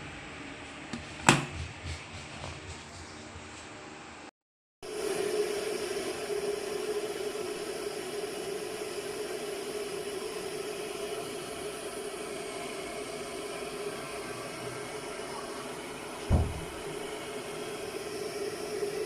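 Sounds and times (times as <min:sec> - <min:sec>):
electric kettle heating water: 0:04.8 - 0:19.0.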